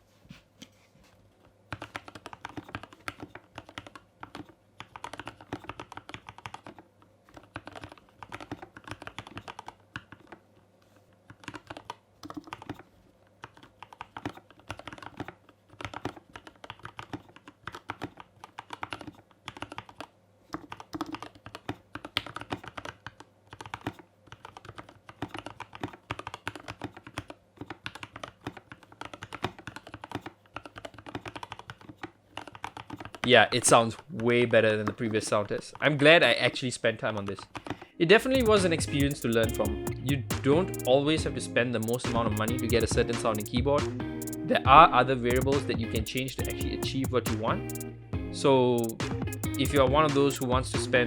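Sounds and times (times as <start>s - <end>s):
typing on mechanical keyboard: 1.7s - 10.4s, 11.3s - 34.2s, 37.5s - 41.0s, 41.8s - 43.5s, 45.3s - 47.8s, 48.8s - 50.5s.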